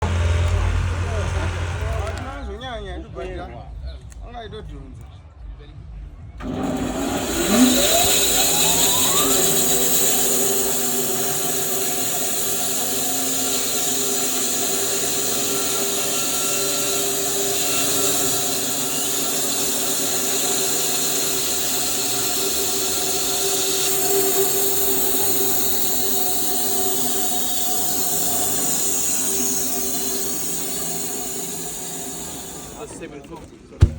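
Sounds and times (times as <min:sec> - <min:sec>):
band sawmill sawing a log: 0:06.4 - 0:33.0.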